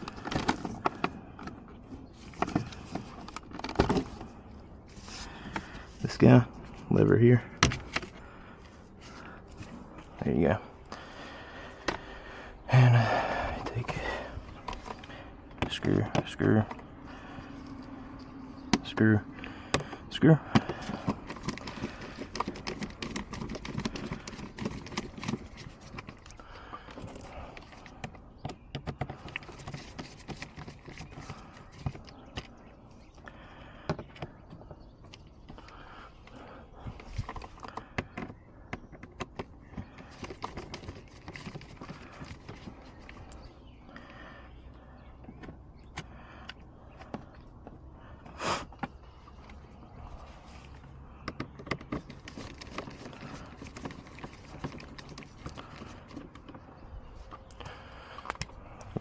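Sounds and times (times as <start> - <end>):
hand tools clicking and tapping: 19.7 - 32.5.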